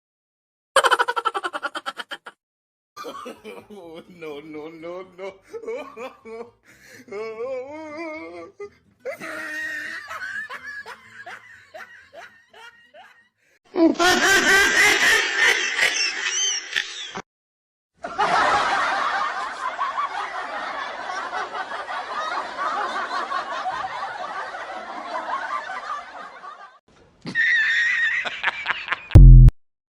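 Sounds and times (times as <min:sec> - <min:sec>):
breathy ha ha laugh: 0:00.8 - 0:02.4, 0:05.2 - 0:17.2
group of people laughing: 0:00.8 - 0:02.4, 0:03.0 - 0:04.6, 0:05.2 - 0:07.3, 0:08.2 - 0:17.2, 0:18.0 - 0:29.2
warbling laugh: 0:00.8 - 0:02.4, 0:09.1 - 0:17.2.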